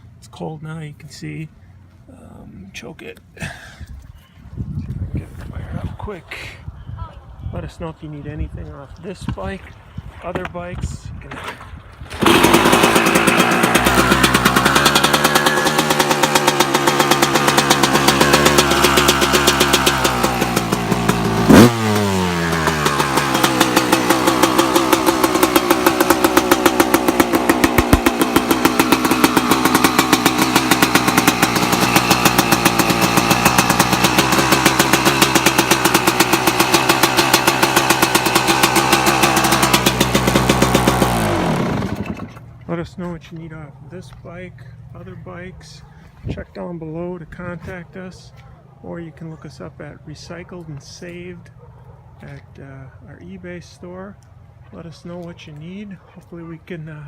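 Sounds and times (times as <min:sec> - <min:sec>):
two-stroke motorcycle engine idling: 0:12.2 - 0:42.6.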